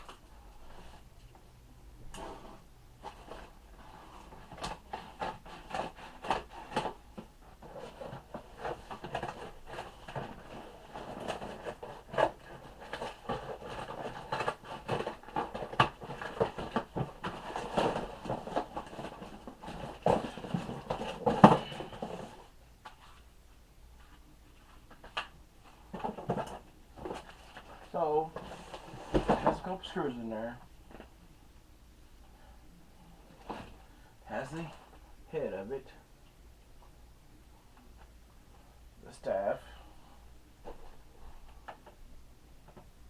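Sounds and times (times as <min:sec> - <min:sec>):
packaging crinkling and rustling: 0:03.0 - 0:23.2.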